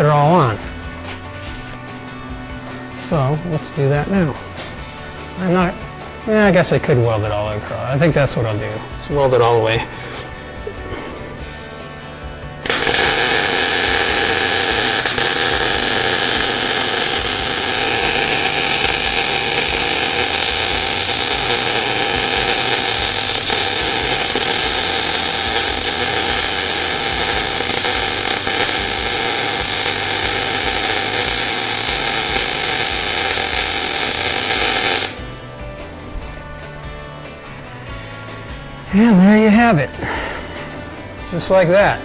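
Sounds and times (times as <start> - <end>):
arc welder crackling hiss: 12.6 - 35.5.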